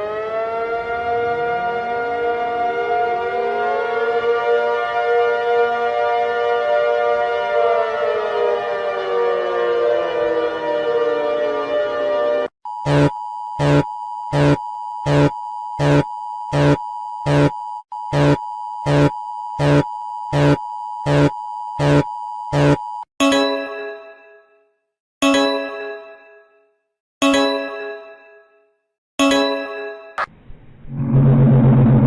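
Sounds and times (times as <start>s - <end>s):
sharp pulsing beep: 12.7s - 23.0s
steady electronic tone: 12.8s - 22.8s.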